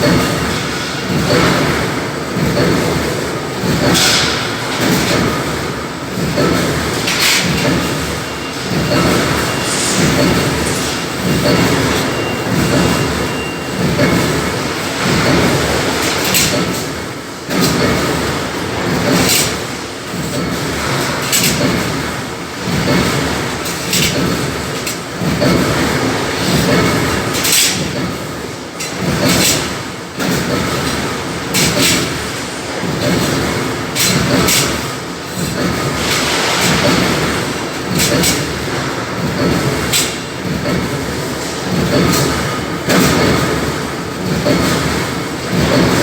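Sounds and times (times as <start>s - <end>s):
arc welding crackle and hiss: 8.9s - 12.2s.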